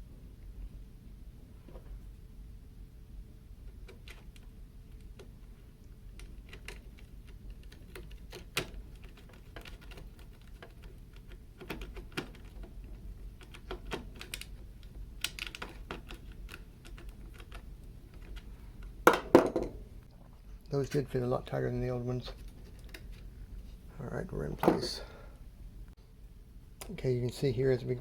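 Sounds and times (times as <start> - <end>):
small plastic parts clicking: 3.6 - 19.0.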